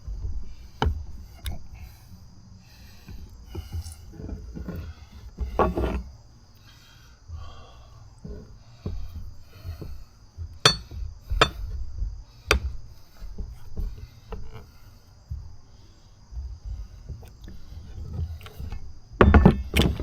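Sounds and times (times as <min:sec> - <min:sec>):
tools clicking on wheel rim: 0:10.6 - 0:11.8.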